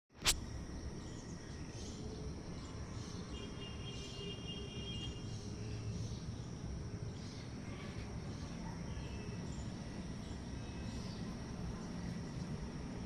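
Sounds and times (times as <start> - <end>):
sharp click: 0.2 - 0.4
high insect-like buzz: 0.2 - 6.7.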